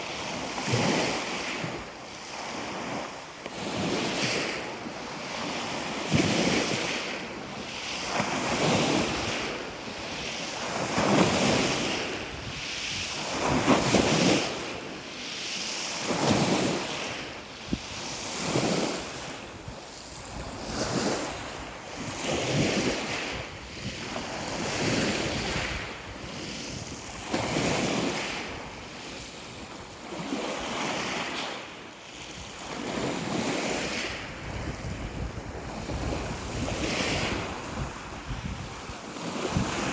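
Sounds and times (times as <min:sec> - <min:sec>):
small waves washing on shore: 0:00.0 - 0:39.9
wind buffeting microphone: 0:11.0 - 0:14.4, 0:17.6 - 0:29.8, 0:34.1 - 0:39.9.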